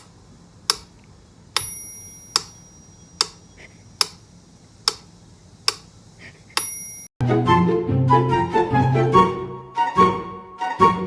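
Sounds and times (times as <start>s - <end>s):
sharp clicks: 0.7s - 3.4s, 4.0s - 4.2s, 4.8s - 5.9s.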